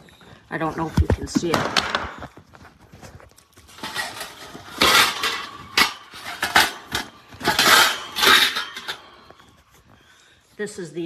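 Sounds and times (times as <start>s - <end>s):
metal parts clinking and rattling: 3.7s - 9.5s.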